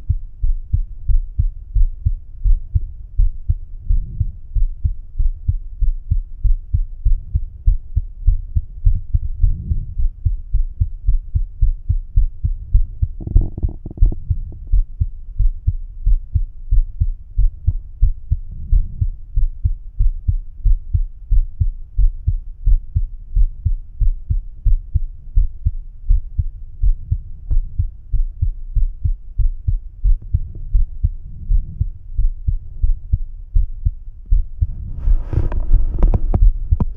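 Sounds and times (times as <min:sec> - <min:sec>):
heartbeat through stethoscope: 0:00.0 - 0:36.9
brief rustle: 0:35.0 - 0:36.4.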